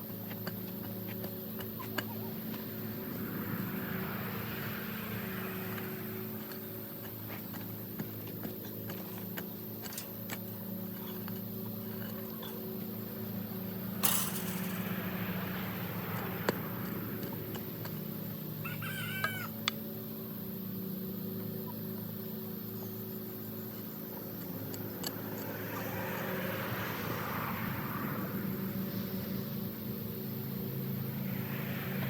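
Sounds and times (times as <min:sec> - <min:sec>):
chicken crowing: 0:18.6 - 0:19.6.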